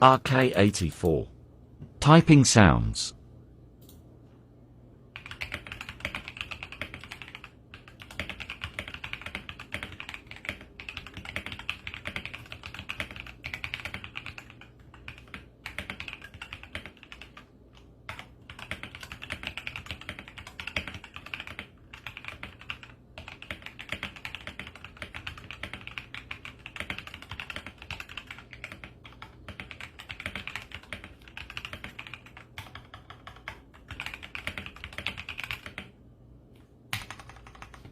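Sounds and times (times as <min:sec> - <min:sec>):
mechanical keyboard clacking: 0:05.2 - 0:17.4, 0:18.1 - 0:35.9, 0:36.9 - 0:37.9.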